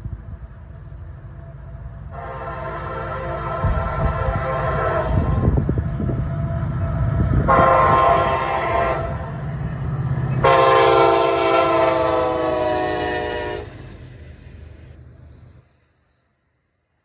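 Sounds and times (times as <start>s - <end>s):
passing train rumble: 0.0s - 15.8s
locomotive air horn blasts: 2.1s - 5.5s, 7.5s - 9.3s, 10.4s - 14.7s.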